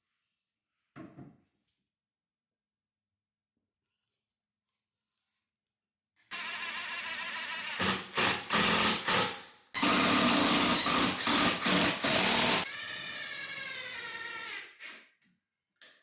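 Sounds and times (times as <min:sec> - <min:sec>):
power drill driving screws: 0:06.3 - 0:15.0.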